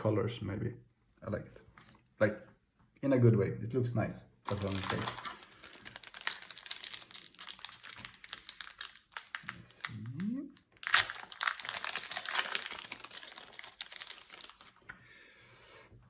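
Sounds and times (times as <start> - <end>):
plastic foil wrapper crinkling: 4.4 - 14.9.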